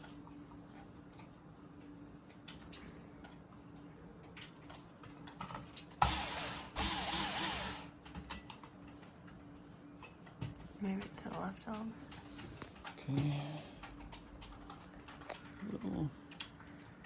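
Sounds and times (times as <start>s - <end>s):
cordless power driver running: 6.0s - 7.9s.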